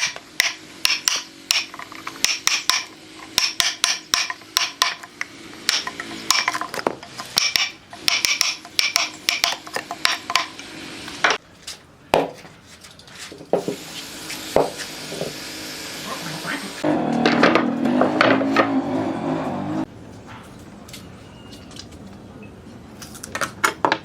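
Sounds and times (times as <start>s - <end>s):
wood scraping: 4.3s - 16.2s, 16.8s - 20.6s.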